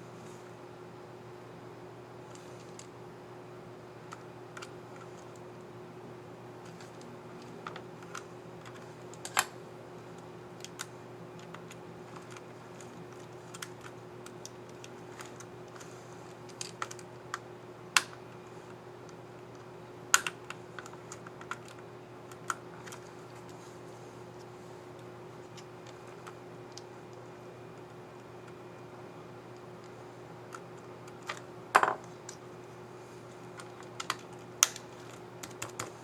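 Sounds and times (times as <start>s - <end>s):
faint steady hum: 0.0s - 36.0s
plastic keyboard key clicks: 33.6s - 35.9s.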